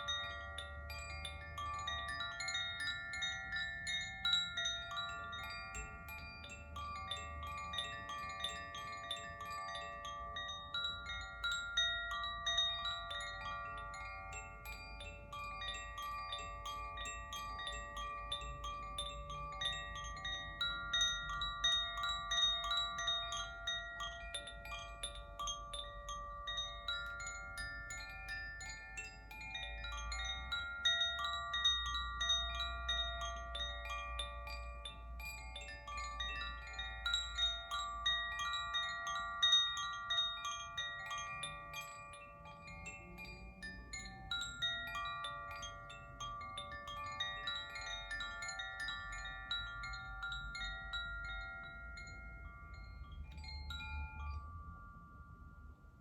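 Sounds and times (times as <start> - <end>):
wind chimes ringing: 0.0 - 56.0.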